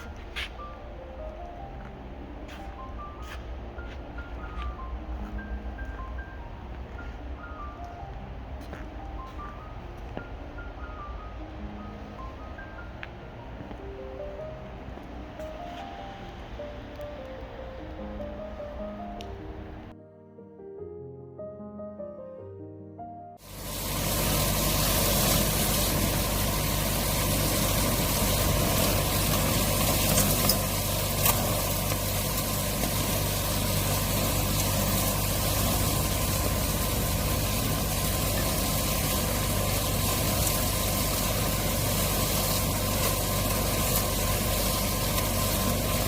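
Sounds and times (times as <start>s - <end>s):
cutting machine humming: 23.4s - 46.0s
faint steady whine: 23.4s - 46.0s.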